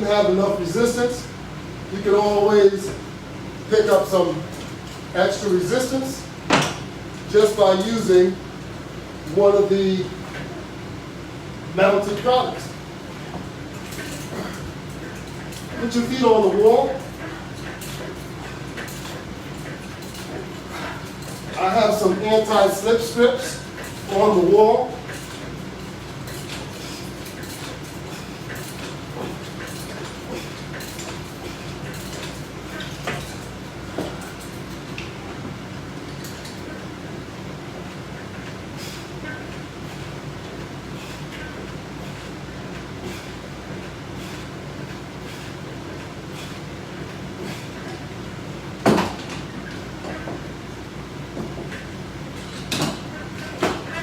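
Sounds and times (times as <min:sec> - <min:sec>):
steady low hum: 0:00.0 - 0:54.0
exercise equipment clicks and knocks: 0:13.3 - 0:35.4, 0:48.8 - 0:50.5, 0:51.4 - 0:54.0.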